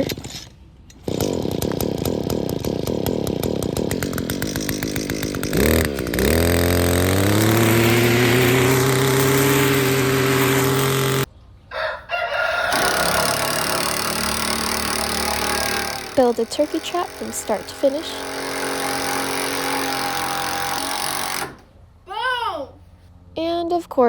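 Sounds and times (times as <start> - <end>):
string trimmer engine revving: 1.0 - 11.3, 12.7 - 21.7.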